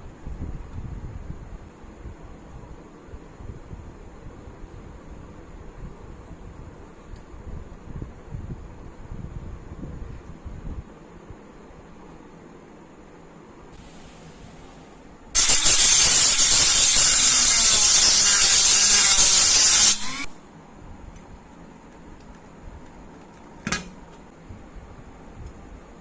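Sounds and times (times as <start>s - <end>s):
pressurised spray hissing: 13.8s - 20.3s.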